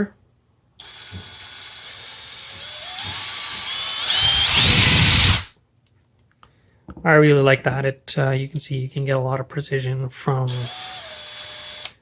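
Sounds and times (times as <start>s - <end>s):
cordless drill motor whining: 0.8s - 5.5s, 10.5s - 12.0s.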